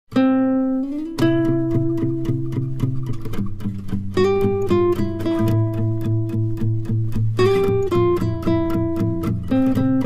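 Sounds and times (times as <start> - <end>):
plucked guitar-like notes: 0.1 - 10.0.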